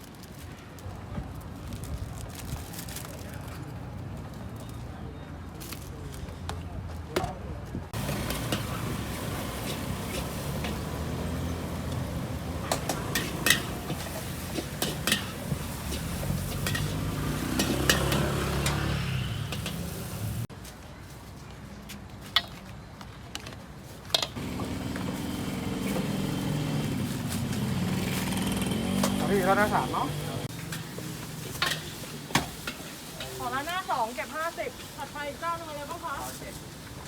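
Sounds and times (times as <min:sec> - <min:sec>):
metal spatula scraping wok: 0:08.0 - 0:20.5, 0:24.4 - 0:36.0.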